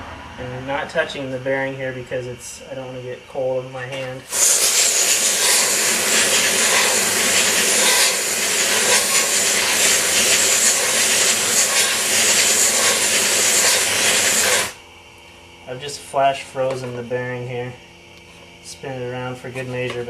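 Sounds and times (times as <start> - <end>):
compressed air can spraying: 4.3 - 14.8.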